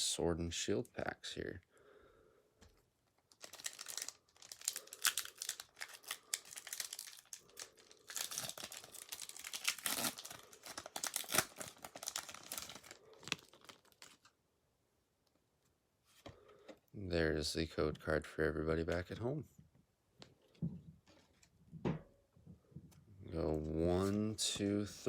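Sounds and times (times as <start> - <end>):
foil wrapper crinkling and tearing: 3.1 - 14.4.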